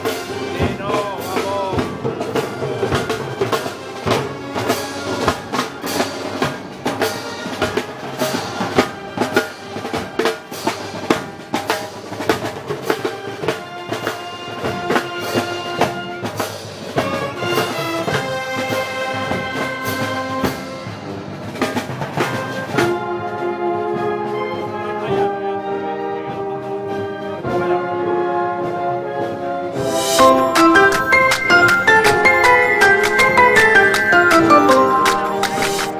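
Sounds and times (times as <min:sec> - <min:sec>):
drum strikes: 0:00.0 - 0:05.5, 0:29.8 - 0:35.9
brass band music: 0:00.0 - 0:11.5, 0:12.8 - 0:24.4, 0:26.7 - 0:35.9.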